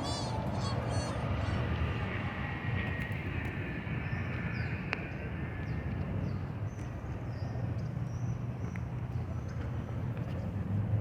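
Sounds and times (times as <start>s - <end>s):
small birds chirping: 0.0s - 1.7s
city traffic rumble: 0.0s - 11.0s.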